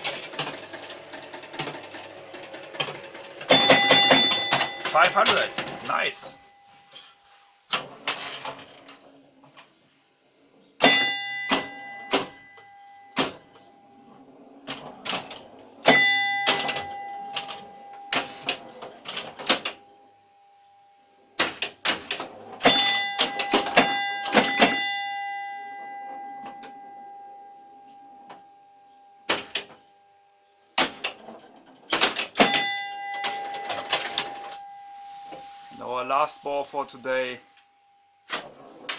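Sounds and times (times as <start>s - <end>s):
pinball mechanical clacks: 0.0s - 6.3s, 10.8s - 19.9s, 21.4s - 25.3s, 29.3s - 29.8s, 30.8s - 34.6s
pinball scoring chimes: 0.0s - 6.7s, 7.8s - 9.4s, 10.5s - 20.1s, 21.4s - 28.4s, 29.2s - 29.8s, 30.8s - 35.2s.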